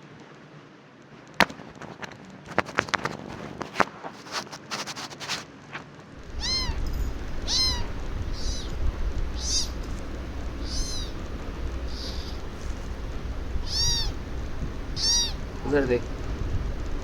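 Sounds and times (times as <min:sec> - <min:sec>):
small animal high-pitched cries: 0:06.2 - 0:15.6
steady low rumble: 0:06.2 - 0:17.0.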